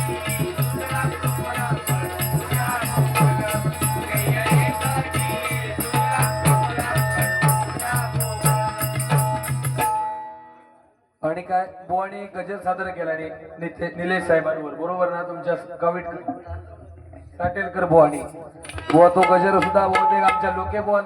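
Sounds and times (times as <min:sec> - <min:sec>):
person singing: 0:00.0 - 0:09.9
steady drum beat: 0:00.0 - 0:10.0
jingling hand percussion: 0:00.0 - 0:10.7, 0:18.1 - 0:20.8
devotional music: 0:00.0 - 0:10.8.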